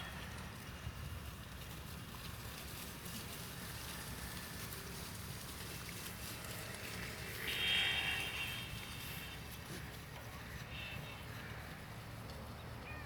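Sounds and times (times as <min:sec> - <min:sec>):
goat bleating: 0:07.4 - 0:09.4.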